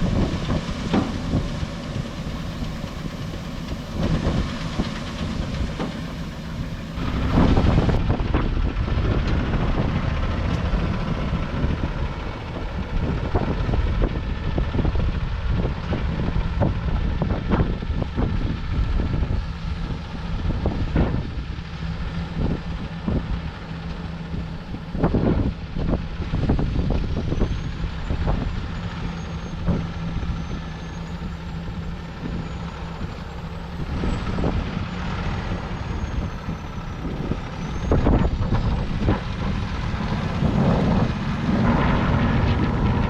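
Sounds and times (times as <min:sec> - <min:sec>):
rattles and knocks: 0:00.0 - 0:14.2
heavy machinery engine running: 0:00.0 - 0:43.0.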